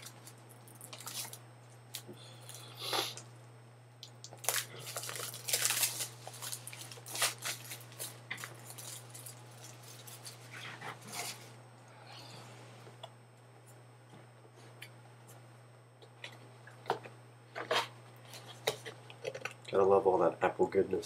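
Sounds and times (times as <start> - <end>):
packaging rustling and crinkling: 0.0 - 2.6, 4.2 - 11.6
steady low hum: 0.0 - 21.0.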